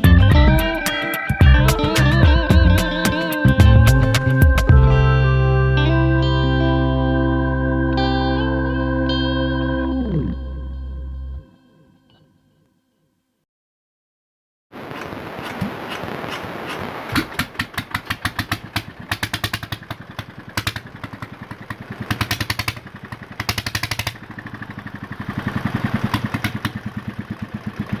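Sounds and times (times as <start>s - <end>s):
diesel engine knocking: 17.6s - 28.0s.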